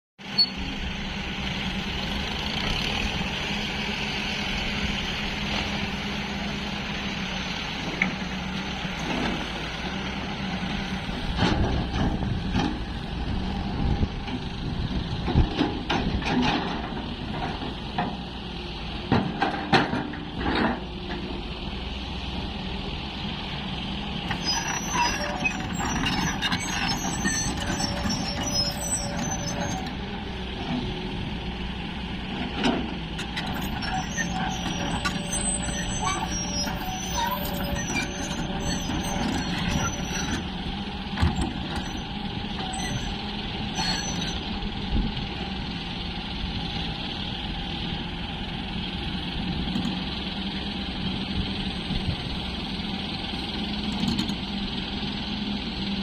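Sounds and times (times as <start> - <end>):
diesel engine running: 0.2 - 56.0
high chirps or squeaks: 0.3 - 0.6, 24.3 - 29.9, 33.6 - 40.5, 42.6 - 44.5.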